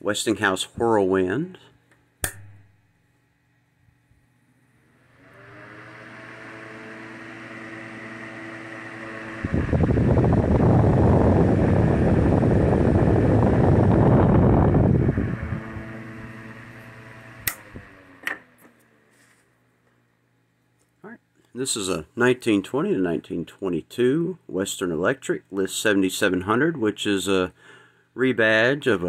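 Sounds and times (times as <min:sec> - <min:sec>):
electric fan motor hum: 0:03.9 - 0:19.4
rush of fan airflow: 0:07.7 - 0:18.1.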